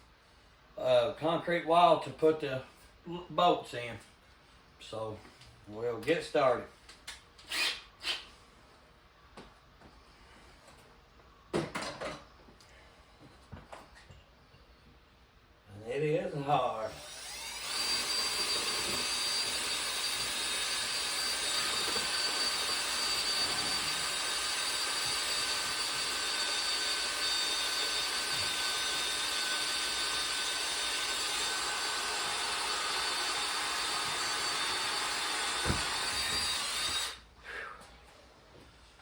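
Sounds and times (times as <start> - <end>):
electric drill boring into concrete: 16.9 - 37.2.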